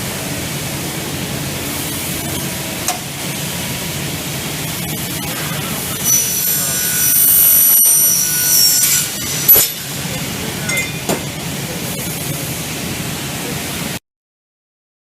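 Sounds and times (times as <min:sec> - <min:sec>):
saw blade whine: 0:04.8 - 0:11.1.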